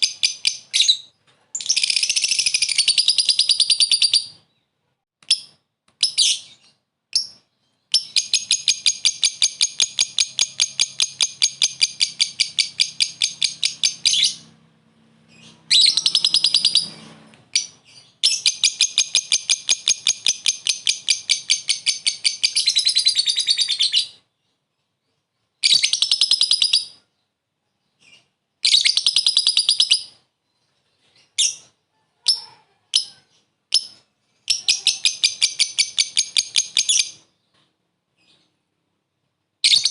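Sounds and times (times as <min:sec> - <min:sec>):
lovebird chattering trill: 0:07.2 - 0:14.5, 0:15.3 - 0:24.2, 0:32.3 - 0:37.2
short bird chirps: 0:15.4 - 0:18.8.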